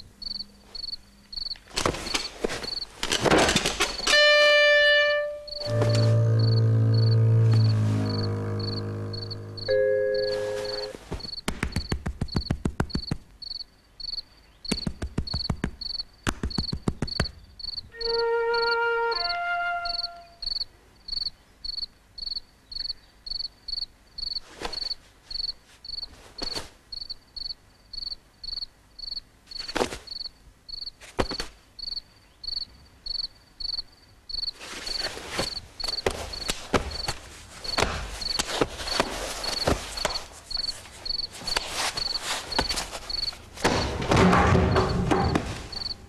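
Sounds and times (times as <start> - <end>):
crickets chirping: 0.0 - 46.0
sharp knocks: 43.6 - 46.0.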